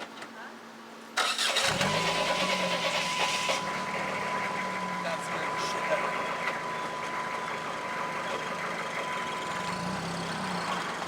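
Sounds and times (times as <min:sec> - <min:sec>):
car engine running: 0:01.6 - 0:11.0
thin high tone: 0:02.8 - 0:11.0.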